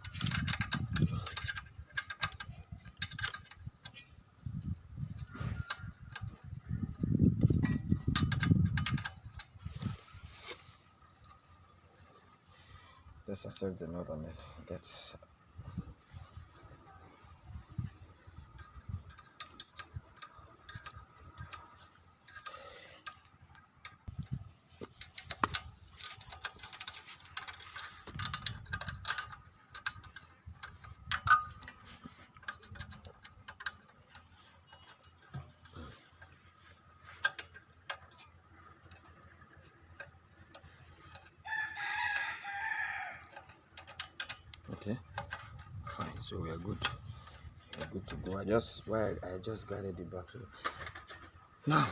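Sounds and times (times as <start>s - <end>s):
spanner clicking on metal nut: 0.0s - 9.5s, 17.8s - 49.1s.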